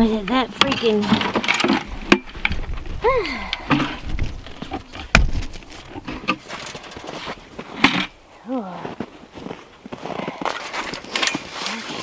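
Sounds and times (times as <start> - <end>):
footsteps in deep snow: 5.6 - 12.0.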